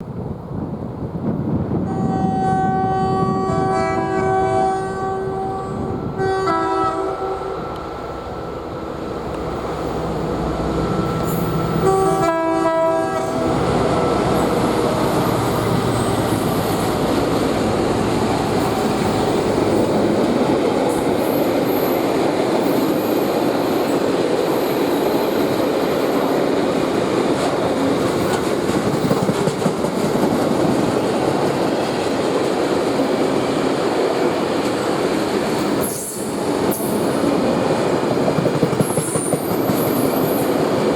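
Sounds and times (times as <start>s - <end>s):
locomotive horn blast: 1.9s - 7.8s, 10.2s - 14.9s
train wheels rumbling and rattling: 7.6s - 40.9s.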